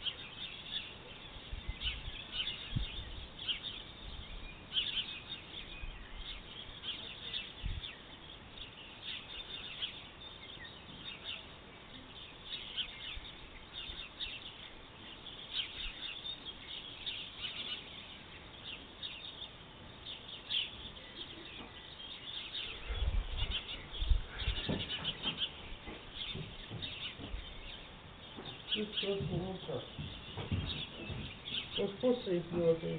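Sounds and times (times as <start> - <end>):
small birds chirping: 0.0 - 32.9
low rumbling thumps: 1.5 - 3.4, 22.7 - 32.9.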